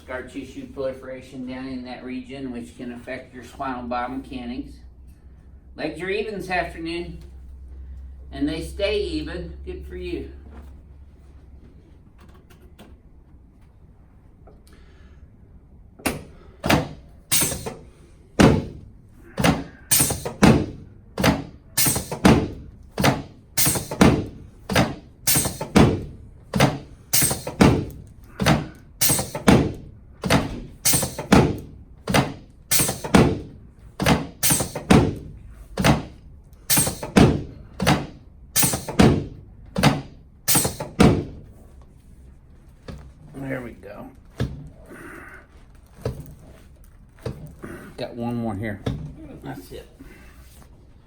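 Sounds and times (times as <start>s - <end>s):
sharp ringing knocks: 16.1s - 18.8s, 19.4s - 35.2s.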